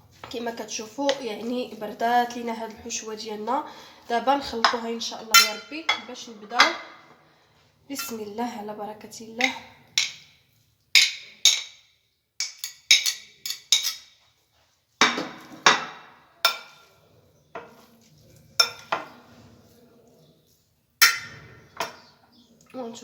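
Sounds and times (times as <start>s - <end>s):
utensil knocking against bowl: 5.4s - 6.9s, 9.4s - 10.3s.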